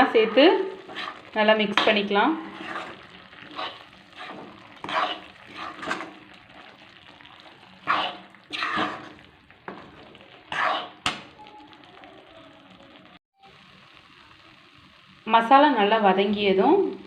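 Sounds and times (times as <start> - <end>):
spoon scraping a pan: 0.0 - 11.3
meat sizzling in oil: 0.0 - 17.0.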